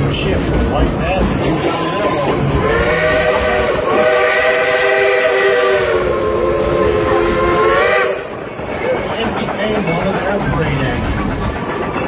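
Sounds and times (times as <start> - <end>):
train running rumble: 0.0 - 12.0
steam locomotive whistle: 2.6 - 8.4.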